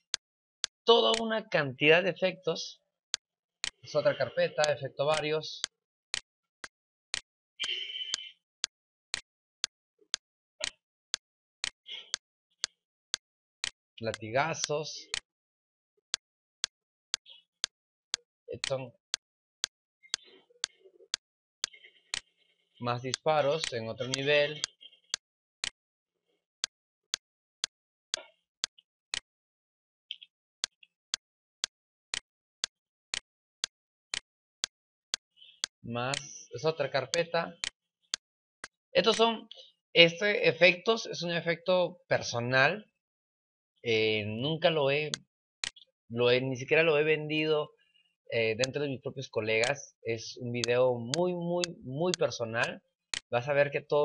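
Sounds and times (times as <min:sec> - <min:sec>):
clock ticking: 0:00.0 - 0:01.3, 0:03.1 - 0:06.3, 0:07.1 - 0:08.4, 0:09.1 - 0:15.3, 0:18.1 - 0:25.8, 0:35.1 - 0:38.2, 0:39.0 - 0:39.3, 0:48.6 - 0:48.8, 0:50.6 - 0:53.3.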